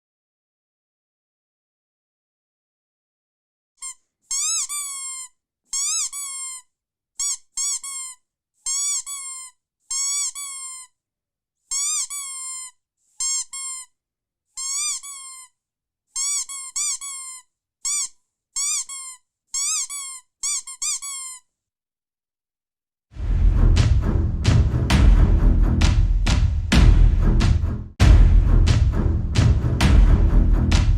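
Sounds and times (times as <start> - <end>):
squeaky dog toy squealing: 3.8 - 11.0, 11.7 - 14.0, 14.6 - 21.5.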